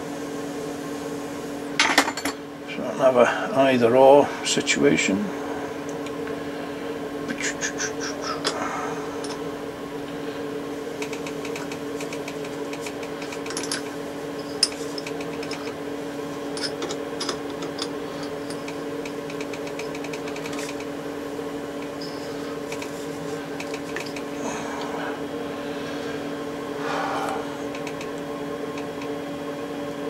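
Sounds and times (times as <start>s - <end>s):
electric motor humming: 3.6s - 30.0s
sharp clicks: 27.7s - 28.2s.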